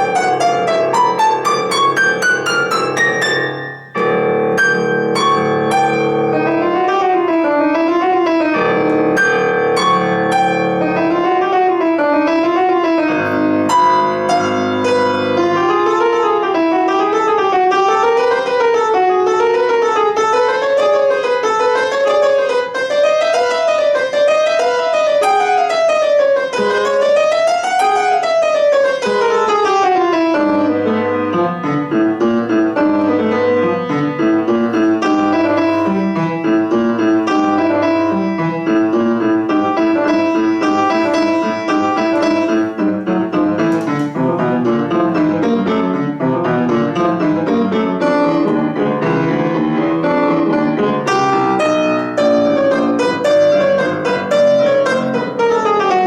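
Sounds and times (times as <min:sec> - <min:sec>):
solo piano fast runs: 0:00.0 - 0:56.0.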